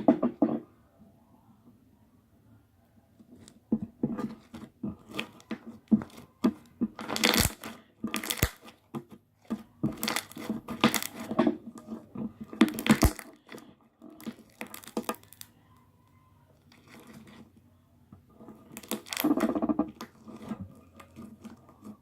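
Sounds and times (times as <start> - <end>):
slime squelching: 4.4 - 15.7, 16.6 - 17.6, 18.6 - 22.0.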